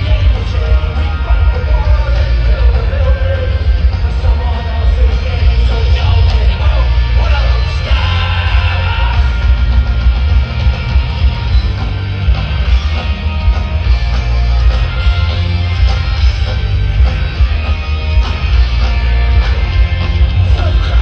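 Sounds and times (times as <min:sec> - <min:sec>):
person shouting singing: 0:00.0 - 0:09.6, 0:20.4 - 0:21.0
heavy booming bass: 0:00.0 - 0:21.0
live rock band playing: 0:00.0 - 0:21.0.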